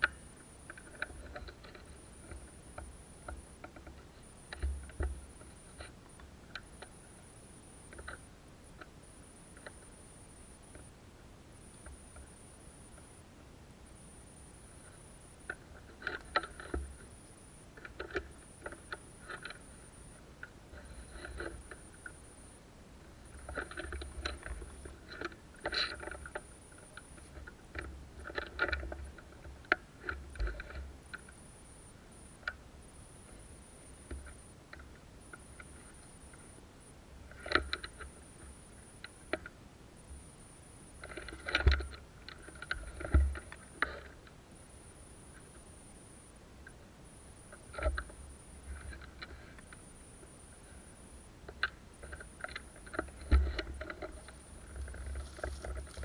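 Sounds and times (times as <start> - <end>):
crunching through dry undergrowth: 54.2 - 56.0.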